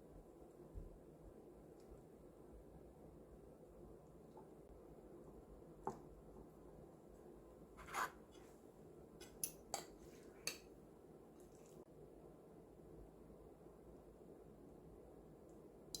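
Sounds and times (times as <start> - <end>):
kitchenware scrape: 7.8 - 8.6.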